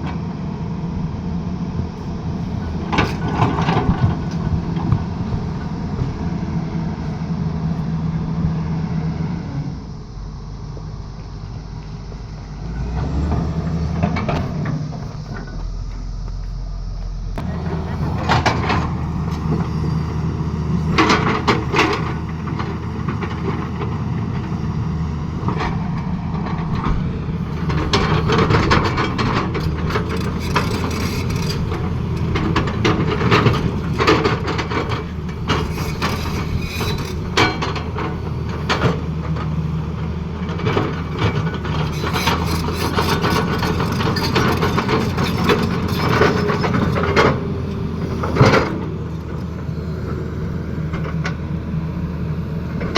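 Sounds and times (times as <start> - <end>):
excavator knocks and clanks: 0.0 - 7.2, 12.7 - 52.9
diesel engine running: 0.0 - 52.9.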